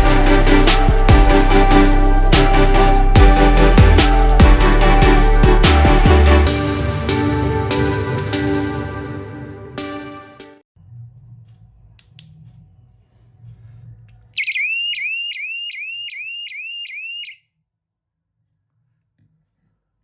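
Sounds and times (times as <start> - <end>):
alarm siren rising chirps: 14.4 - 17.4.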